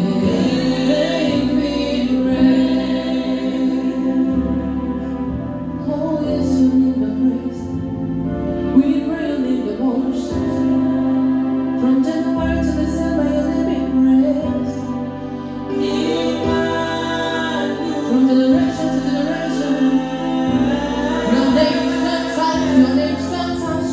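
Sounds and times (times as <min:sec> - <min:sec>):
keyboard sustained chords: 0:00.0 - 0:23.9
low bass: 0:00.0 - 0:23.9
voices singing gently: 0:15.6 - 0:23.9.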